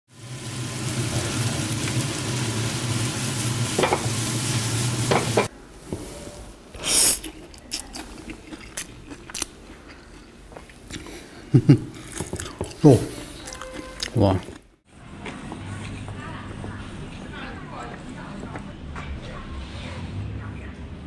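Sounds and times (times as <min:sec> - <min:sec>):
noodles sizzling in a wok: 0:00.1 - 0:05.5
metal clattering against pan: 0:03.8 - 0:04.1.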